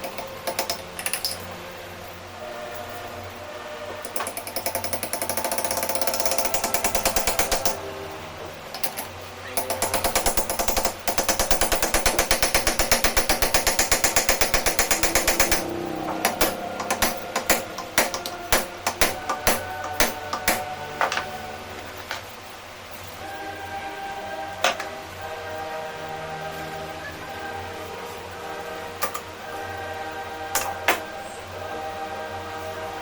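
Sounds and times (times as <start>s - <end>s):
rapid mechanical clattering: 0.0s - 1.7s, 4.0s - 7.9s, 8.7s - 21.3s.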